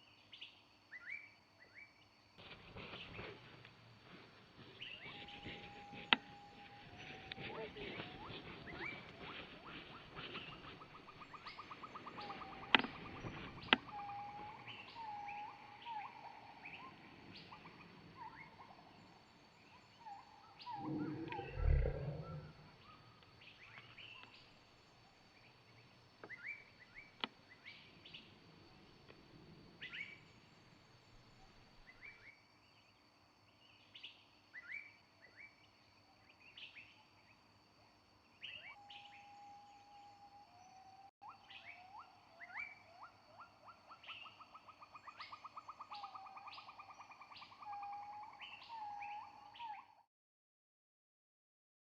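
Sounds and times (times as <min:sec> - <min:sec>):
birds chirping: 0:02.4 - 0:24.5
low rumble: 0:20.8 - 0:22.9.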